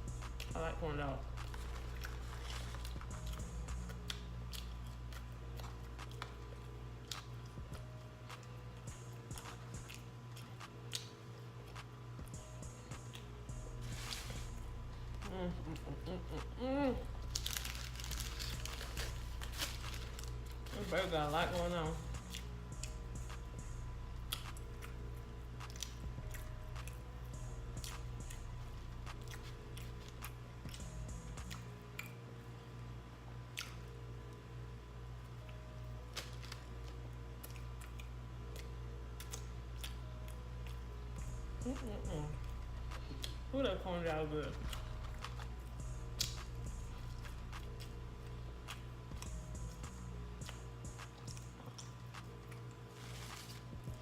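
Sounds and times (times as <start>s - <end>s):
steady low hum: 0.0s - 54.0s
chewing food mouth sounds: 1.3s - 11.9s, 42.4s - 43.5s, 44.5s - 48.0s, 48.6s - 53.4s
person chewing food: 1.4s - 11.9s, 27.8s - 32.2s, 37.4s - 40.9s.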